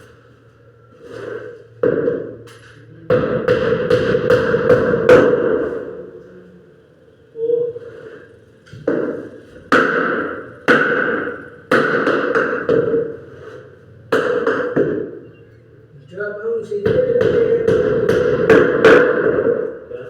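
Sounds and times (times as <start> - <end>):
hammer striking wood: 3.1 - 5.8, 8.8 - 13.2, 14.1 - 15.2, 16.9 - 19.8.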